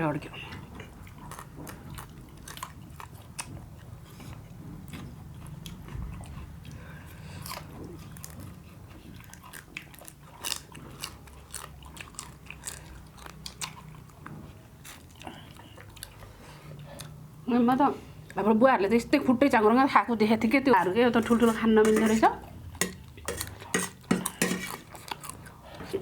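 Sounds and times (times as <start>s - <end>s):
chewing and biting: 0.6s - 17.3s, 23.0s - 26.0s.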